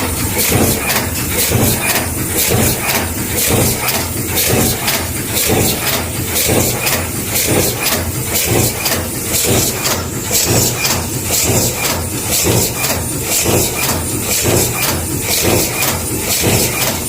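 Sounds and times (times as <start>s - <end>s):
forging machine strokes: 0.0s - 17.0s
low motor hum: 0.0s - 17.0s.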